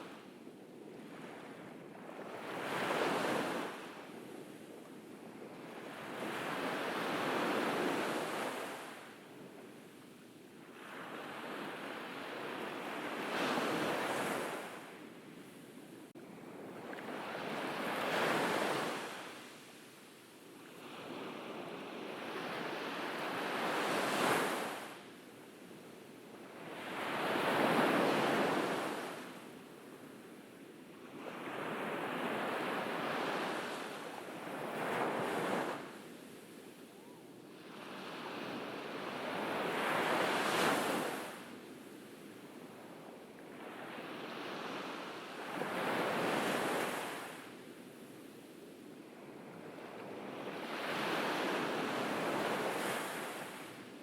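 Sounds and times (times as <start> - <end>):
ocean waves breaking on beach: 10.7 - 20.0, 20.6 - 25.1, 26.3 - 30.2, 31.0 - 48.4, 49.2 - 54.0.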